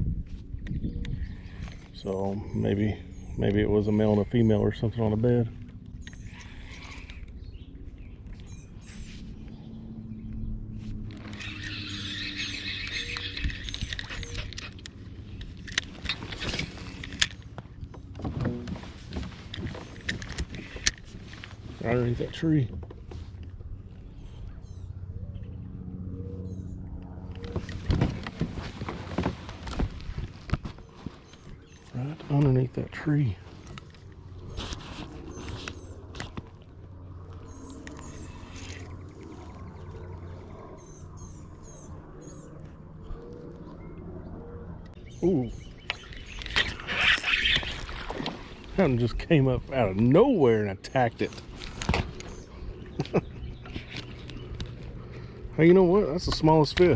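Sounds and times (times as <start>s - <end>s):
low hum: 0.0s - 56.9s
low steady rumble: 0.0s - 56.9s
small bird chirping: 11.2s - 15.6s.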